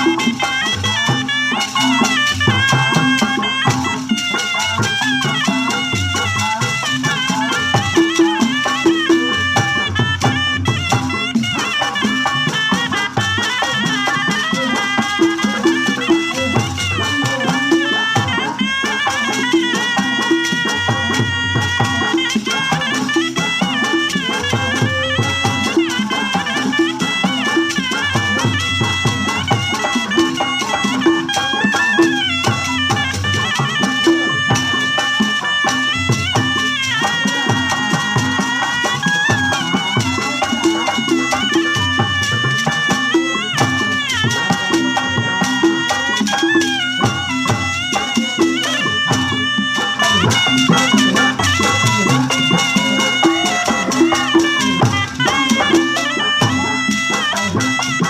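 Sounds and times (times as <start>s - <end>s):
rapid drum strokes: 0.0s - 58.0s
shawm playing ornamented melody: 0.0s - 58.0s.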